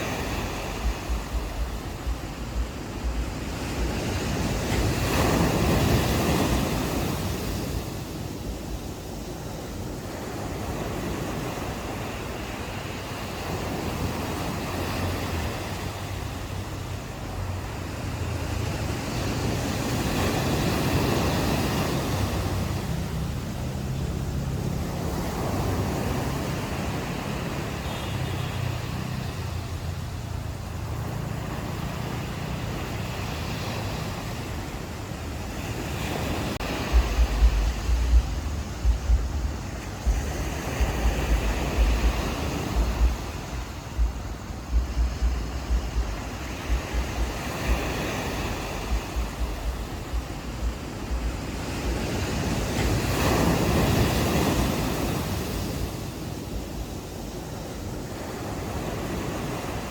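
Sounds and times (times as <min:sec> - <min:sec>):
ocean waves on a beach: 0:00.0 - 0:59.9
wind buffeting microphone: 0:00.0 - 0:59.9
low rumble: 0:00.7 - 0:04.0, 0:36.6 - 0:47.8, 0:48.5 - 0:51.5.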